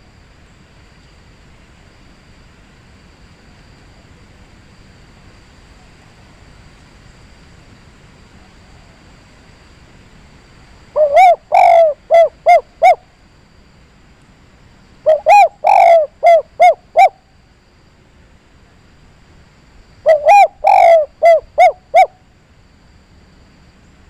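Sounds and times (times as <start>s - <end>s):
dove cooing: 11.0s - 13.0s, 15.0s - 17.2s, 20.0s - 22.2s.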